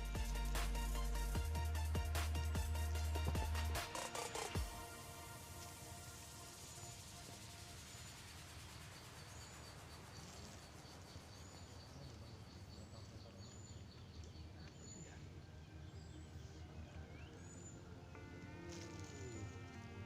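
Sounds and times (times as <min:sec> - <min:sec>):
bird chirping: 0:08.8 - 0:19.7.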